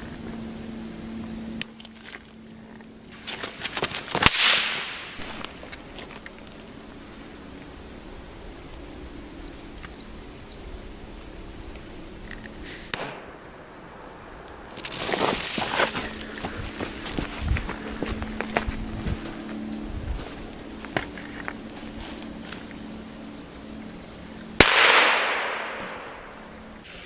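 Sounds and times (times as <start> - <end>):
birds chirping: 0.8 - 1.8, 5.2 - 27.0
sharp crackles: 1.3 - 7.2, 11.7 - 18.7, 20.4 - 27.0
firecracker bang echoing: 4.2 - 5.3, 12.9 - 13.9, 24.6 - 26.4.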